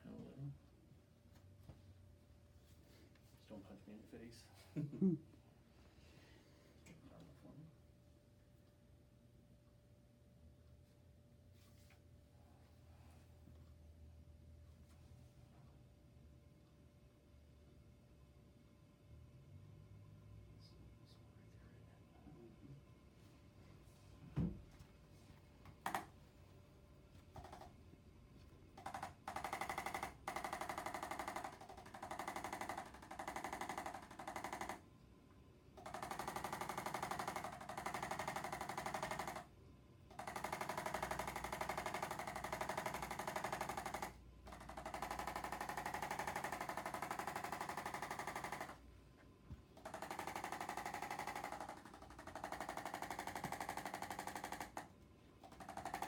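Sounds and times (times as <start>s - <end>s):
electric massager buzzing rattle: 25.6s - 26.2s, 27.3s - 27.7s, 28.8s - 34.8s, 35.8s - 39.5s, 40.1s - 48.9s, 49.8s - 56.0s.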